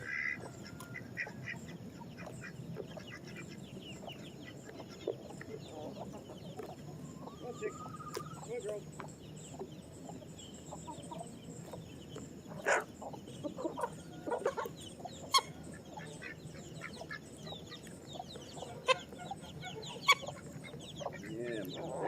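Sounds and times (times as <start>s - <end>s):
loud chicken calls: 0.0s - 3.6s, 6.9s - 8.5s, 12.5s - 17.2s
chickens clucking: 0.0s - 22.0s.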